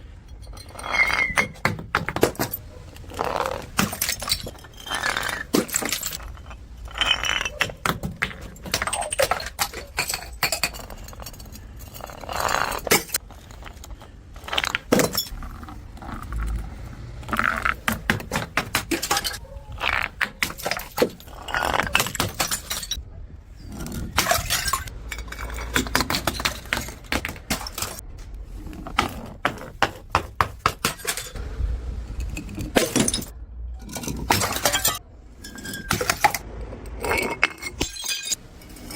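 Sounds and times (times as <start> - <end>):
broken glass clinking: 0.3 - 2.6, 3.7 - 13.2, 14.7 - 15.4, 17.9 - 19.4, 20.3 - 23.0, 23.8 - 28.0, 30.7 - 31.4, 32.2 - 36.4, 37.0 - 38.9
glass bottles smashing: 0.3 - 16.3, 17.3 - 23.0, 23.7 - 28.0, 28.9 - 31.4, 32.2 - 36.4, 37.0 - 38.9.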